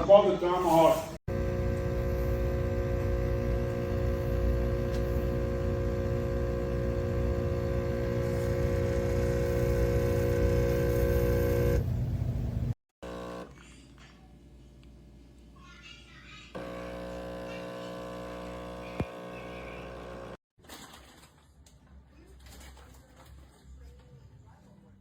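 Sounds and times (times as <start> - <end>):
espresso machine humming: 1.3 - 13.6, 16.6 - 20.4.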